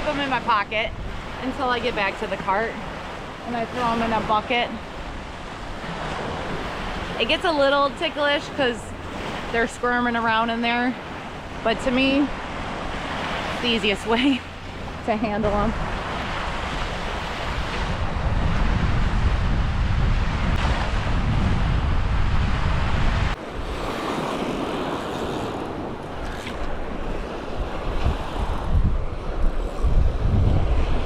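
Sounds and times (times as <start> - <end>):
surf washing on beach: 0.0 - 31.0
wind buffeting microphone: 0.0 - 31.0.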